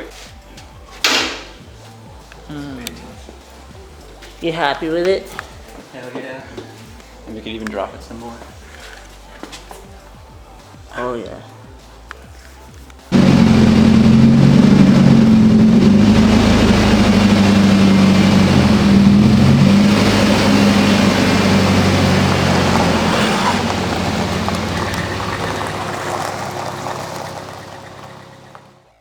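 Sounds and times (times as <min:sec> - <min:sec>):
car engine running: 0:13.1 - 0:28.8.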